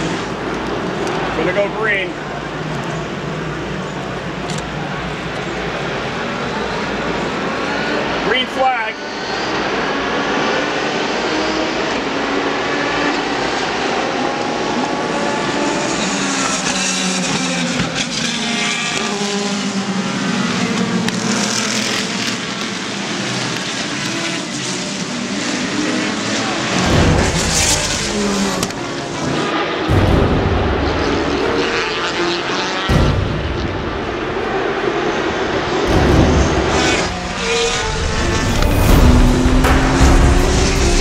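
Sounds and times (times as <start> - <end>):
race cars passing: 0.0 - 41.0
heavy deep rumble: 35.4 - 41.0.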